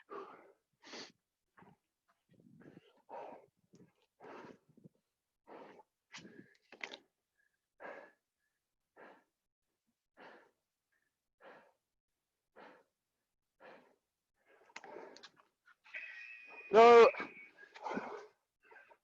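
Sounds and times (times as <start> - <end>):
person breathing hard: 0.0 - 1.2, 2.5 - 6.8, 7.4 - 9.4, 10.1 - 11.8, 12.5 - 13.0, 13.6 - 15.4, 17.5 - 19.0.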